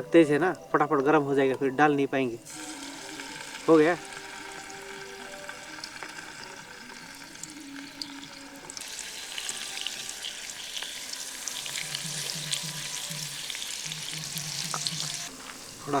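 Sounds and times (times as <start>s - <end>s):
fish frying in hot oil: 2.5s - 16.0s.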